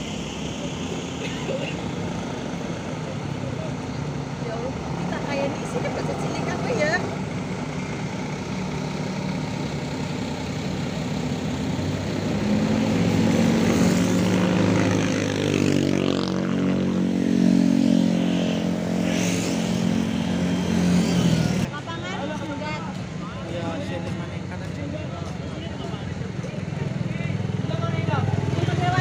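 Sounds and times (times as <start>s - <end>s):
diesel bus engine running: 0.0s - 29.0s
traffic noise: 0.0s - 29.0s.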